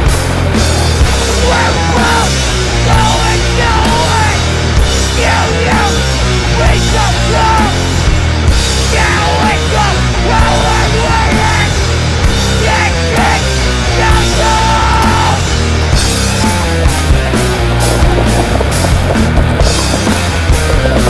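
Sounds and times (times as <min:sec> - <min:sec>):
loud rock music: 0:00.0 - 0:21.0
person singing: 0:01.1 - 0:07.9, 0:08.8 - 0:11.8, 0:12.5 - 0:15.5.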